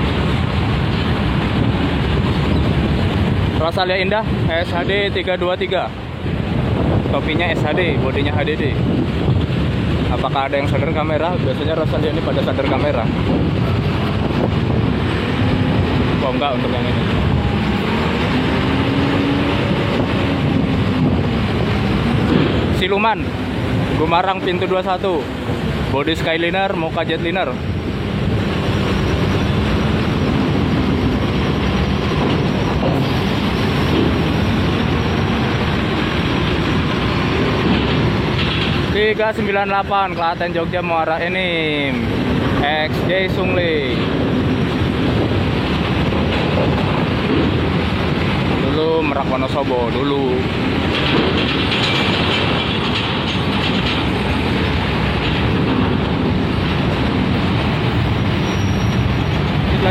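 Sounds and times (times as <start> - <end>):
bus driving past: 13.7 - 24.4.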